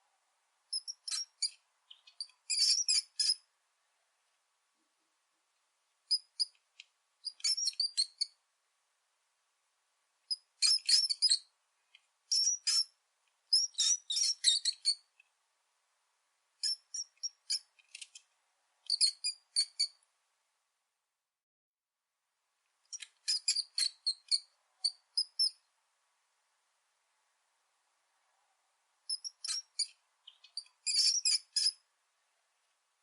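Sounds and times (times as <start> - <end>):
rat squeaking: 0.7 - 3.5, 6.1 - 6.6, 7.2 - 8.4, 10.3 - 11.5, 12.3 - 15.1, 16.6 - 18.2, 18.8 - 20.0, 22.9 - 25.6, 29.1 - 31.8.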